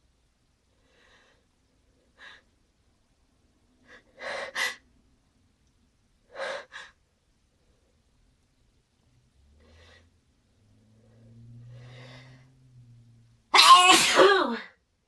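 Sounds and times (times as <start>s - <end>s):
person sneezing: 13.6s - 14.6s.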